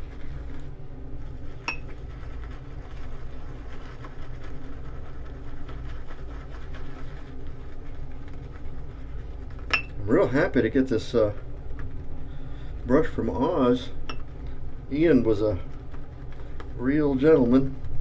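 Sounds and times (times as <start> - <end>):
brush lathering soap in a dish: 0.0 - 18.0
steady low hum: 0.0 - 18.0
brush clinking against dish: 1.7 - 1.9, 9.7 - 10.0.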